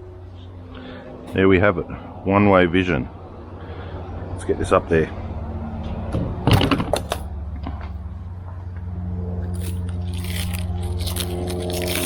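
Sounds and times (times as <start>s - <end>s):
steady low hum: 0.0s - 6.5s, 7.2s - 12.0s
plastic sheet crackling: 9.6s - 12.0s.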